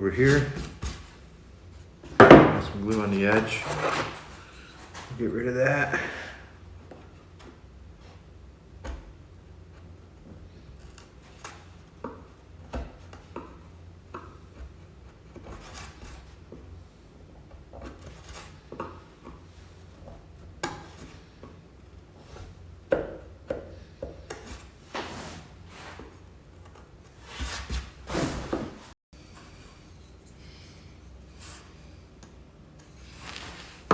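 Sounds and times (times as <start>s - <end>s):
knocks on wood: 2.2s - 2.7s
hand tool scraping wood: 2.6s - 5.2s, 15.3s - 16.5s, 17.8s - 19.0s, 24.2s - 28.8s, 32.9s - 33.9s.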